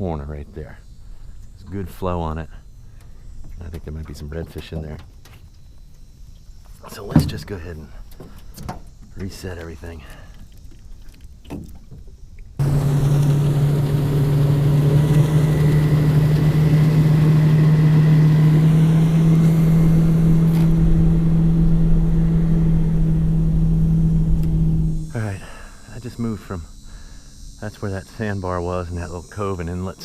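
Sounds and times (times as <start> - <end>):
outboard motor humming: 6.9 - 30.0.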